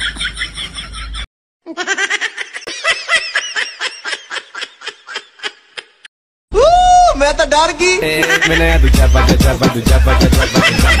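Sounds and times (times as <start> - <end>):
fast pulsing laugh: 8.2 - 11.0
high-pitched laughing: 8.2 - 11.0.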